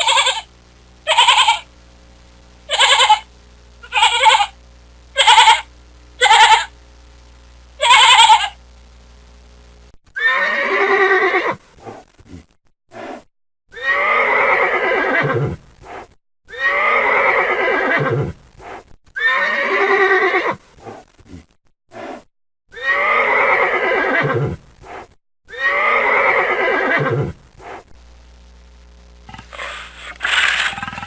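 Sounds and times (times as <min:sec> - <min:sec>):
horse whinnying: 0:10.2 - 0:11.6, 0:13.7 - 0:15.6, 0:16.5 - 0:18.4, 0:19.2 - 0:20.6, 0:22.7 - 0:24.6, 0:25.5 - 0:27.3.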